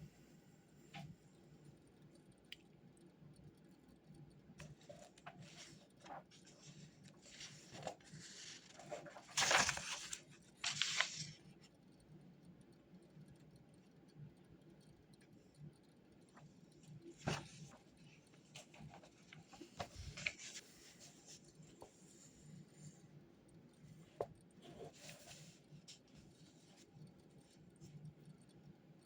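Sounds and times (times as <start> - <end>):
paper rustling and handling: 4.6 - 11.4, 17.1 - 22.0.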